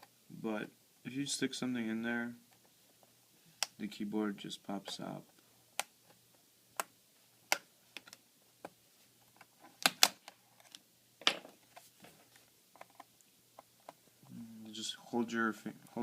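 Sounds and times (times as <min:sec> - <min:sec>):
laptop keyboard plastic clicks: 0:09.8 - 0:10.3.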